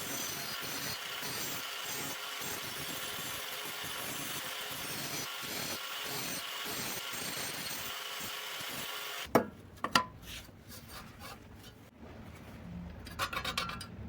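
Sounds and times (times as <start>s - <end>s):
tool scraping steel pipe: 0.0s - 9.3s.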